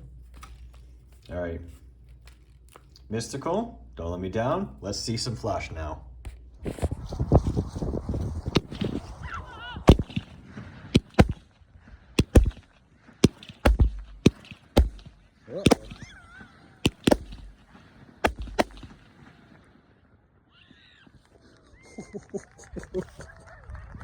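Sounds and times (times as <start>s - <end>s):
fireworks cake firing: 6.8s - 11.5s, 12.2s - 19.8s.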